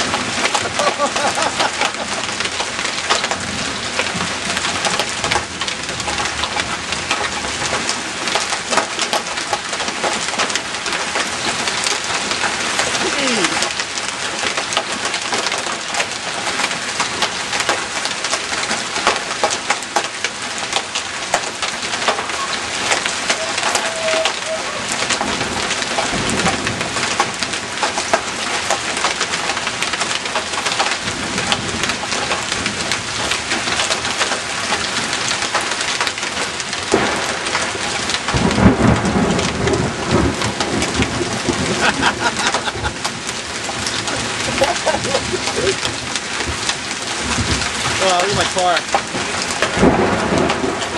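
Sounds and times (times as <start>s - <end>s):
thunder rumbling: 0.0s - 6.8s, 36.9s - 50.9s
hail and heavy rain pelting: 0.0s - 50.9s.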